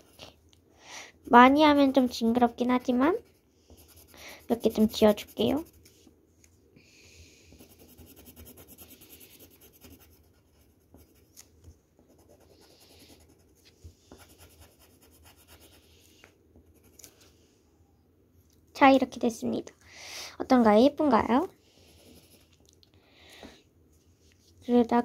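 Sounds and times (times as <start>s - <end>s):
drawing tool scratching paper: 2.7s - 5.9s, 7.5s - 11.3s.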